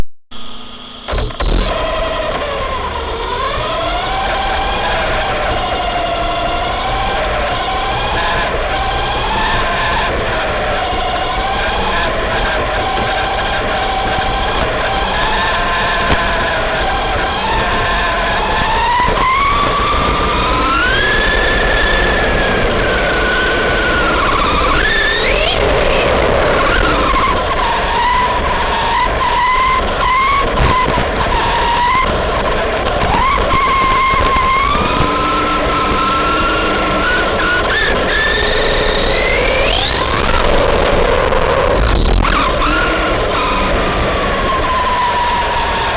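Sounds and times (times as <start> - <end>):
electric motor whining: 0.3 - 45.9
steady rushing noise: 4.1 - 45.9.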